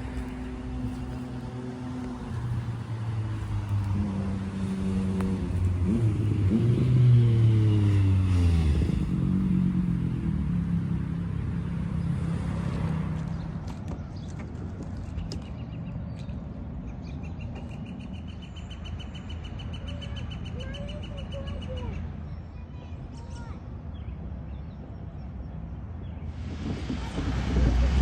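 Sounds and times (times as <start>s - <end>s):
vehicle engine running: 0.0s - 16.6s, 26.1s - 28.0s.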